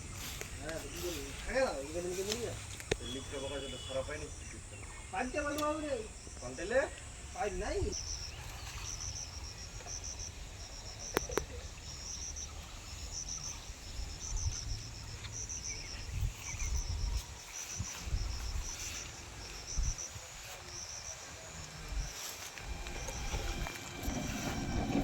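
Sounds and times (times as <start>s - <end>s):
crickets chirping: 0.0s - 25.0s
low rumble: 21.9s - 25.0s.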